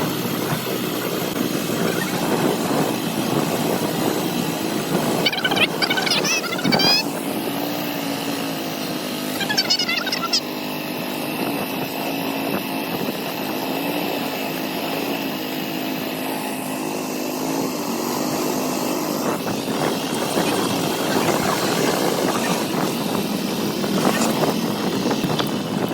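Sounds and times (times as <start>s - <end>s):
small boat engine running: 0.0s - 25.9s
rising high-pitched calls: 5.2s - 7.2s, 9.3s - 10.5s.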